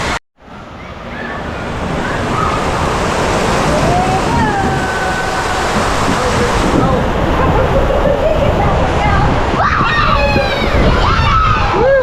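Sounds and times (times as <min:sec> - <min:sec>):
splashing water rushing: 0:00.0 - 0:12.0
distant hubbub of voices: 0:00.7 - 0:12.0
faint shrieks: 0:03.7 - 0:06.8.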